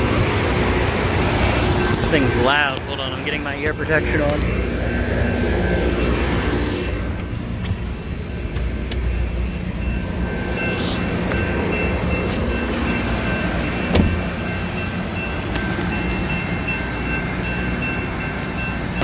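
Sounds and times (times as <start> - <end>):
rail grinder diesel rumble: 0.0 - 19.0
high ringing tones: 0.1 - 19.0.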